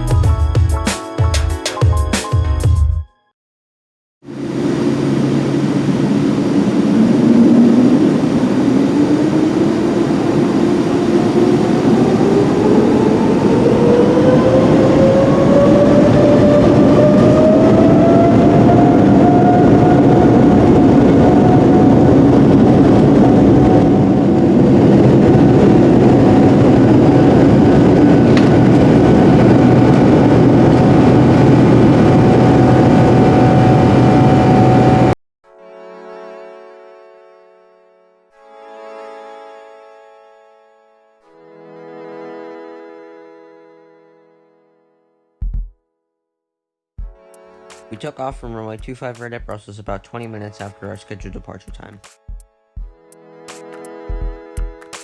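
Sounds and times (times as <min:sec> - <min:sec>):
jet engine whine rising: 0:04.3 - 0:35.2
takeoff roll rumble: 0:04.3 - 0:35.2.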